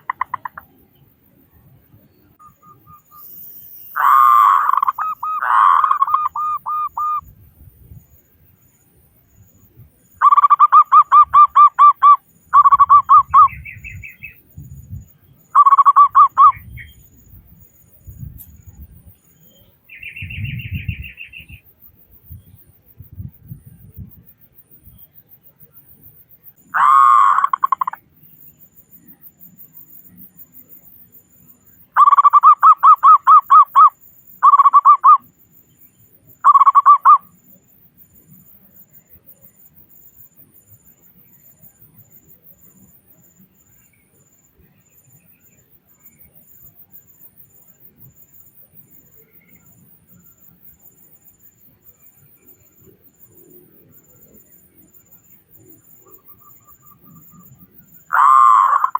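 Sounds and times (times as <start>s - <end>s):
dove cooing: 4.0s - 7.2s, 58.1s - 58.9s.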